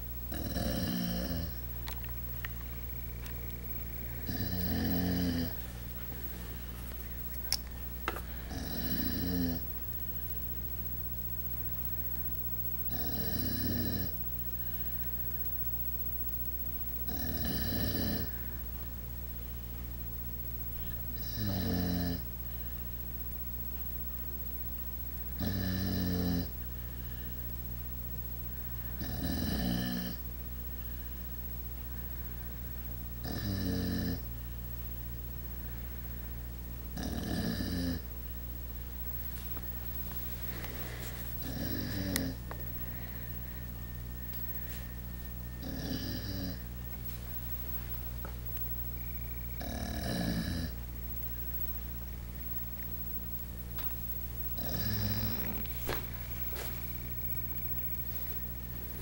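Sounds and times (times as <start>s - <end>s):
dog snoring: 0.3s - 1.7s, 3.0s - 6.4s, 8.3s - 9.7s, 12.8s - 14.3s, 17.0s - 18.5s, 20.9s - 22.3s, 25.3s - 26.6s, 28.9s - 30.2s, 33.2s - 34.3s, 36.9s - 38.1s, 40.5s - 42.9s, 45.5s - 46.7s, 48.9s - 50.8s, 54.4s - 58.2s.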